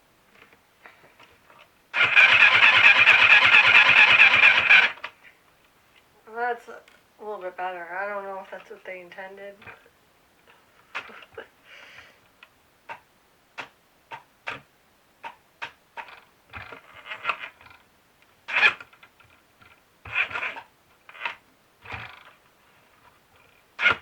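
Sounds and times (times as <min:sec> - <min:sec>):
sewing machine clicking and rattling: 0:01.2 - 0:05.2, 0:13.6 - 0:17.8, 0:18.5 - 0:24.0.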